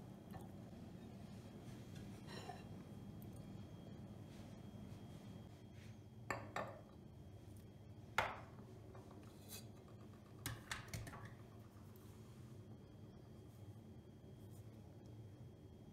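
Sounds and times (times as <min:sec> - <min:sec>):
dishes clinking and knocking: 0:06.3 - 0:06.9.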